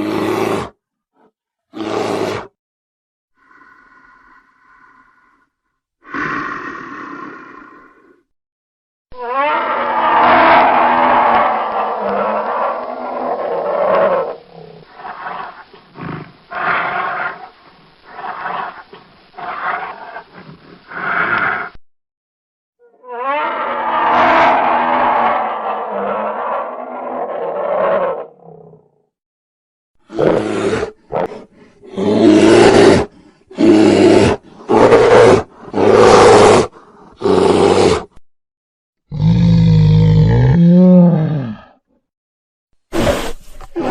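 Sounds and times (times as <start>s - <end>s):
bear roaring and growling: 0.0s - 0.8s, 1.7s - 2.6s, 3.4s - 8.2s, 9.2s - 21.8s, 22.9s - 29.0s, 30.0s - 38.2s, 39.1s - 41.8s, 42.9s - 43.9s
bear grunts: 39.1s - 41.8s.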